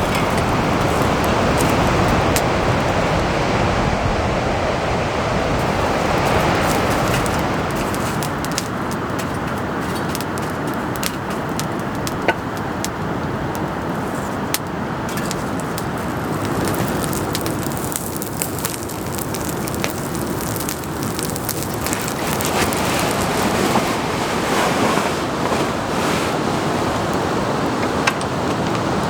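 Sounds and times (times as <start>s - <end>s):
sharp ticks and crackles: 0.0s - 3.2s, 5.6s - 23.5s
rain hissing: 0.0s - 29.0s.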